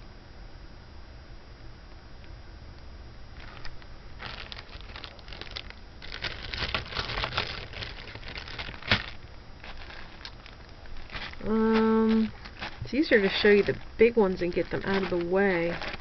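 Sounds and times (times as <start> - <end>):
plastic bags crinkling: 3.4 - 16.0.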